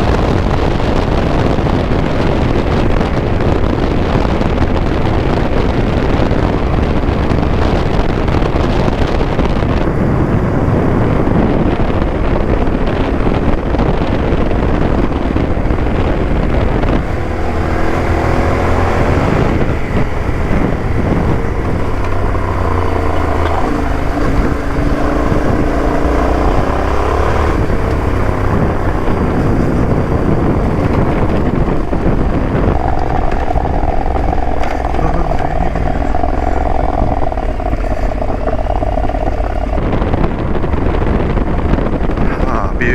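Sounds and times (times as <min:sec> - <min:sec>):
motorcycle engine revving: 0:00.0 - 0:42.9
wind noise on microphone: 0:00.0 - 0:42.9.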